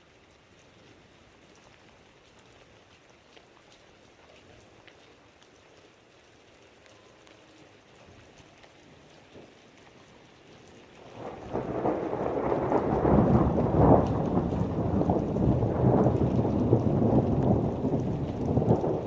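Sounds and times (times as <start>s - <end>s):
rain falling: 0.0s - 19.0s
rolling thunder: 11.0s - 19.0s.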